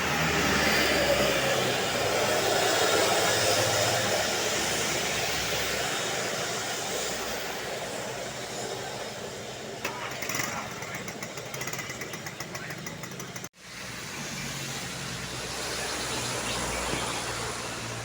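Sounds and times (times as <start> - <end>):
bus driving past: 11.4 - 18.0.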